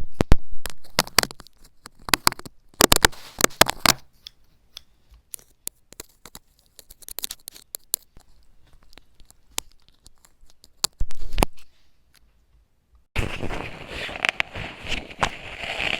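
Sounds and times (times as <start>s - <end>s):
faint crackling: 13.1s - 15.9s.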